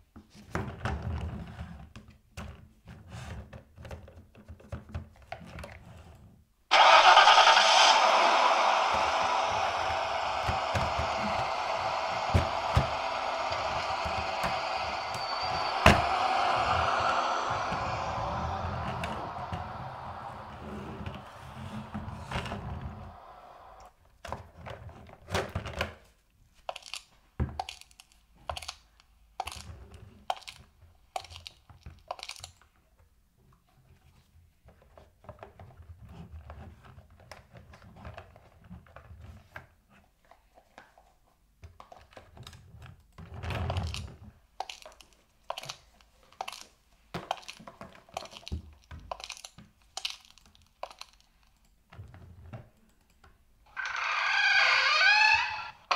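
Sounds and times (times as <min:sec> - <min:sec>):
small objects clicking and rustling: 0:26.6 - 0:30.6, 0:31.2 - 0:32.7, 0:43.6 - 0:51.6.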